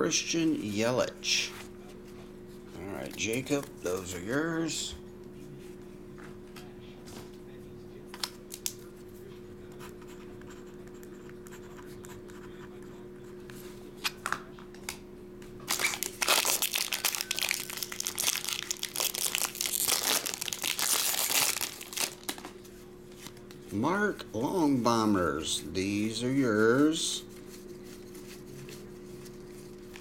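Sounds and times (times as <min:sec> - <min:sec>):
card pack wrapper tearing and crinkling: 0:08.5 - 0:08.8, 0:15.7 - 0:22.5.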